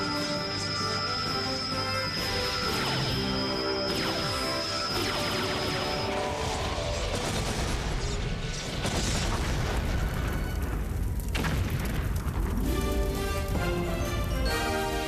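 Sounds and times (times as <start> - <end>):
dramatic music score: 0.0 - 15.0
explosions booming: 6.3 - 14.4.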